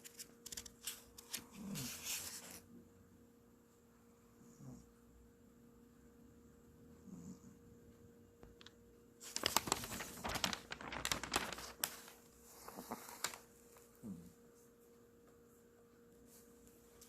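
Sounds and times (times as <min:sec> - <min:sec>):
newspaper rustling: 0:00.0 - 0:02.6, 0:09.2 - 0:13.9.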